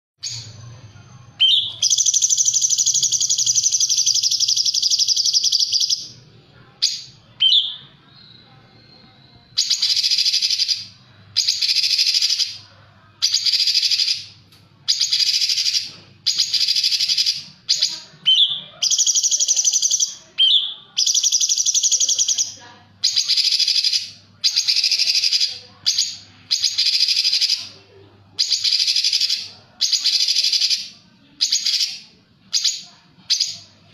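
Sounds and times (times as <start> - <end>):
bird singing harsh buzzy bursts: 1.4 - 6.1.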